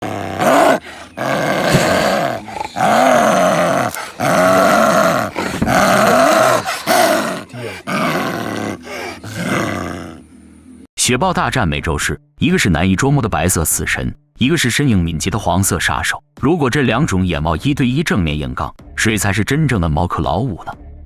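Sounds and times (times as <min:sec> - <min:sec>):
big cats snarling and growling: 0:00.0 - 0:10.3.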